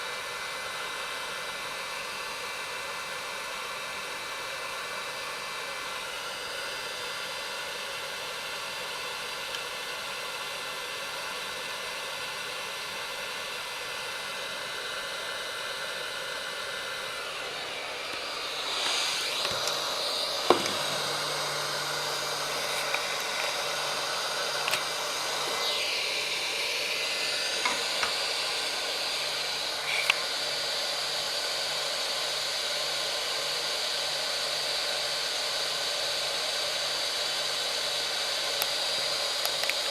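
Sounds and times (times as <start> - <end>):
hot-air gun blowing: 11.0 - 32.9.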